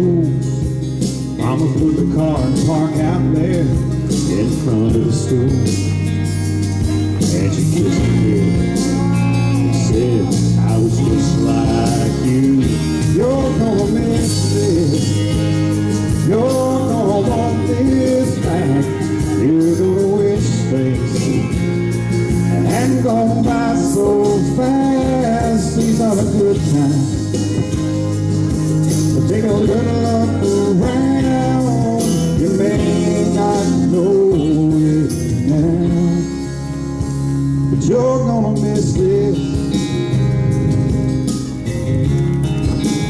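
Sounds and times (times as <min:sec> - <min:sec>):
guitar and band backing: 0:00.0 - 0:43.0
person singing country song: 0:00.0 - 0:43.0.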